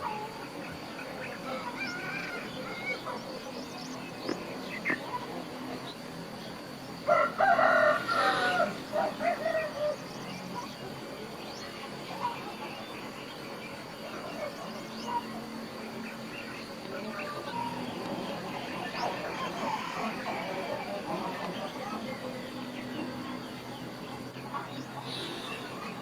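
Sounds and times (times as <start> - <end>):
faint bird chirps: 0.0 - 26.0
rooster crowing: 7.1 - 10.0.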